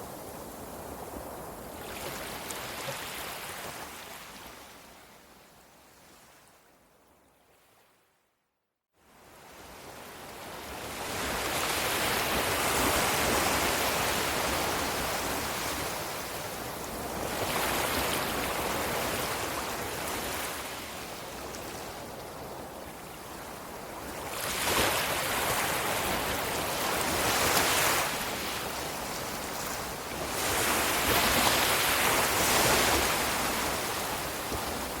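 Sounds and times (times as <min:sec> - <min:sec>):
ocean waves breaking: 0:24.2 - 0:35.0.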